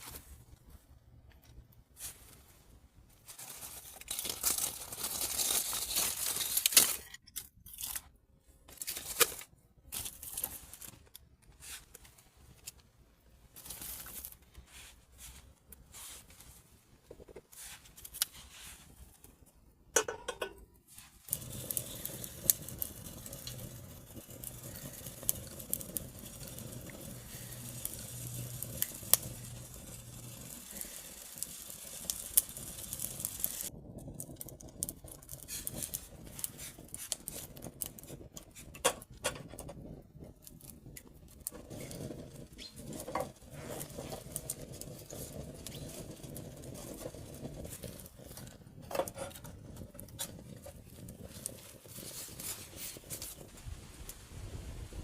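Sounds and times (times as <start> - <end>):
small fire crackling: 0.0 - 55.0
paper crumpling and tearing: 3.3 - 8.0, 8.7 - 12.2.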